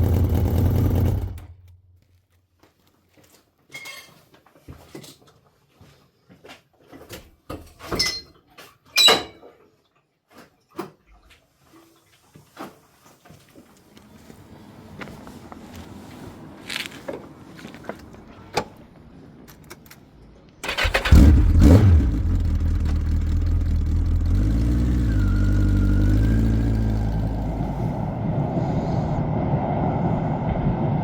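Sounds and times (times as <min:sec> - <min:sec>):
motorcycle engine idling: 0:00.0 - 0:01.4, 0:20.6 - 0:27.6.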